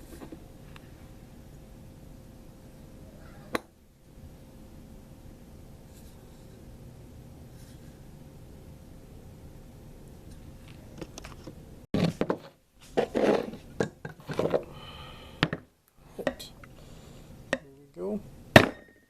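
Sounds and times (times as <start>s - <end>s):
background hiss: 11.6s - 18.7s
faint steady tone: 14.7s - 19.0s
metallic ring: 18.6s - 19.0s.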